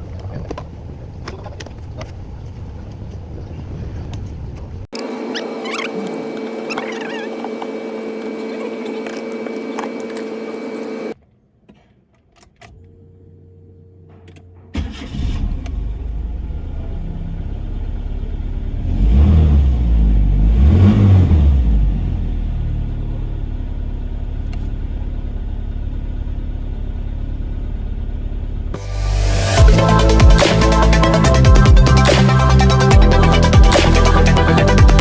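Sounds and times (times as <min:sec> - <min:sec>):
car engine starting and revving: 0:14.7 - 0:35.0.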